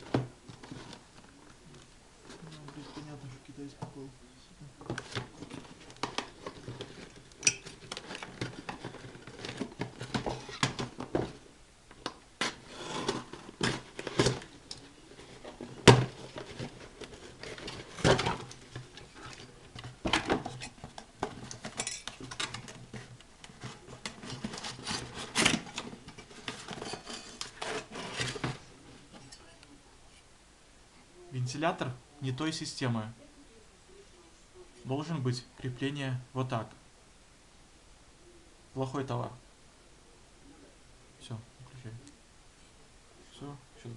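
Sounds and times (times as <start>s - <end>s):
metal fan clinking and rattling: 7.4s - 8.2s, 20.6s - 22.8s.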